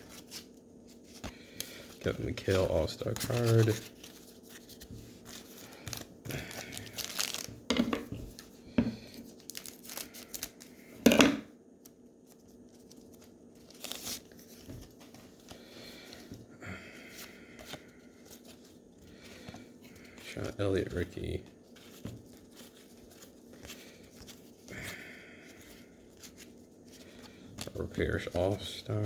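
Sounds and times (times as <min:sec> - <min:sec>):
wrappers crinkling and tearing: 0:00.0 - 0:07.6, 0:08.3 - 0:10.9, 0:12.2 - 0:16.1.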